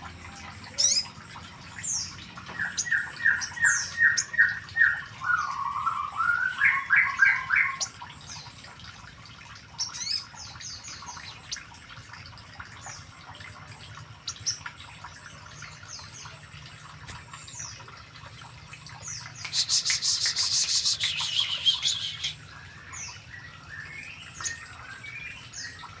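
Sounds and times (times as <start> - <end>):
bird chirping and calling: 0.7 - 1.1, 1.7 - 8.4, 18.9 - 25.9
loud fast high bird trill: 19.4 - 22.5.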